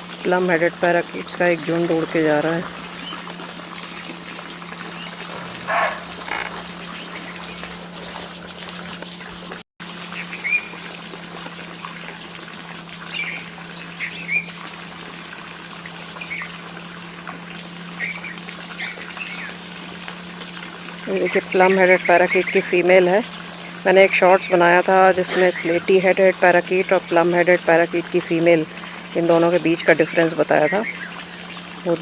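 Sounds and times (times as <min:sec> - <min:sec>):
parakeets calling: 0:04.7 - 0:08.5.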